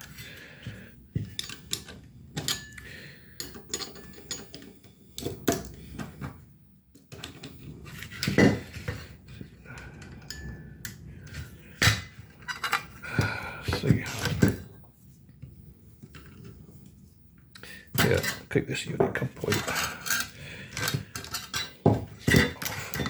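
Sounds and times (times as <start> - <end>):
metallic clicks and scrapes: 19.4 - 23.0.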